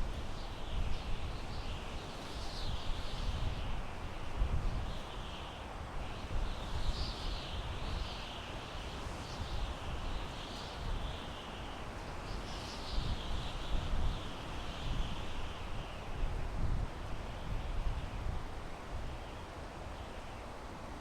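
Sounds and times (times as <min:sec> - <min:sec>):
wind blowing through pine trees: 0:00.0 - 0:21.0.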